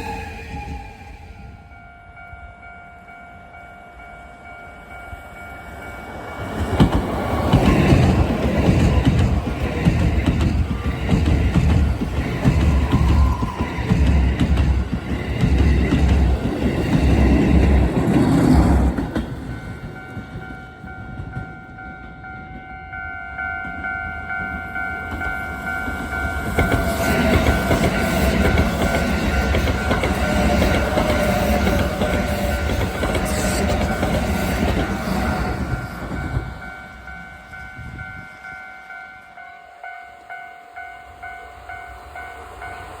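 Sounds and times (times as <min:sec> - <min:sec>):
train wheels clattering: 0:06.3 - 0:22.7, 0:23.6 - 0:38.0.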